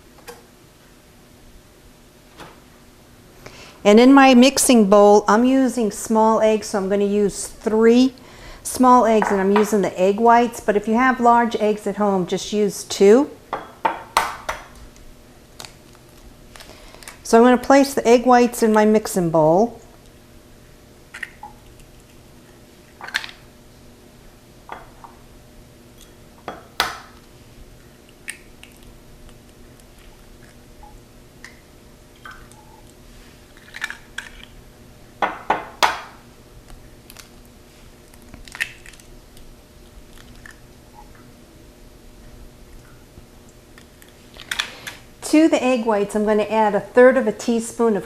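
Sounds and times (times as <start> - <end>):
steady low hum: 0.0 - 48.0
eggshells cracking against bowl: 31.4 - 34.6, 37.0 - 40.8.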